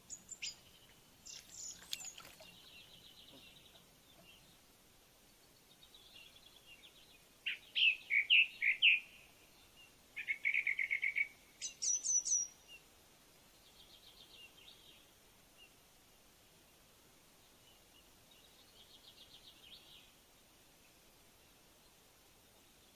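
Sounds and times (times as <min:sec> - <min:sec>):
songbirds singing: 0:00.0 - 0:15.8.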